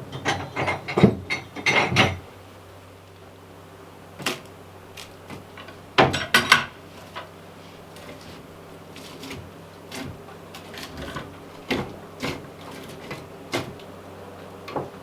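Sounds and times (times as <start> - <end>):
faint steady hum: 0.0 - 15.0
sharp knocks and clatters: 0.1 - 2.2.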